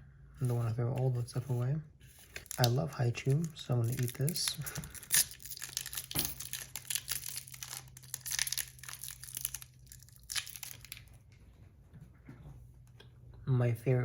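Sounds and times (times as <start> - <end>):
plastic wrapper crinkling: 2.1 - 11.3.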